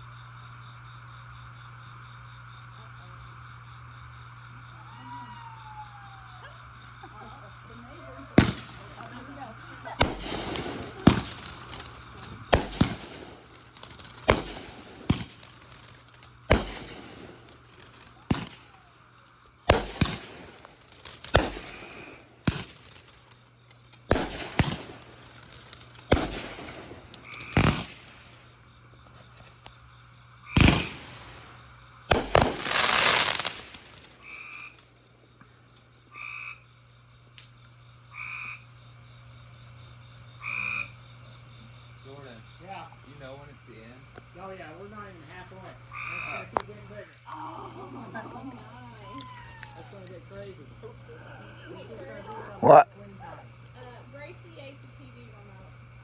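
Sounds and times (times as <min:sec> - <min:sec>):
low steady hum: 0:00.0 - 0:56.0
fireworks bangs and crackle: 0:04.6 - 0:35.5.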